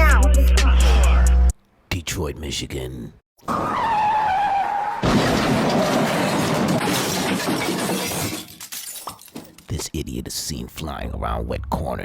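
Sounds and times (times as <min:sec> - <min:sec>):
car tyres squealing: 0:03.4 - 0:05.1
car crash: 0:03.5 - 0:08.7.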